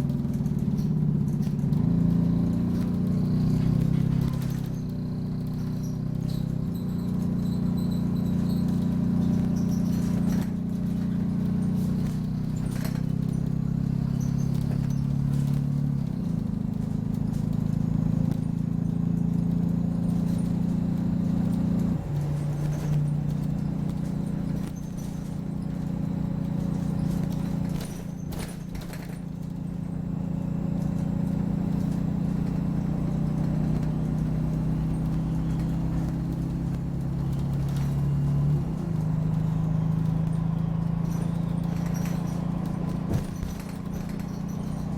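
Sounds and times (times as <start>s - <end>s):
bus diesel engine running: 0.0s - 44.9s
squeaks and rattles from bus body: 0.0s - 44.9s.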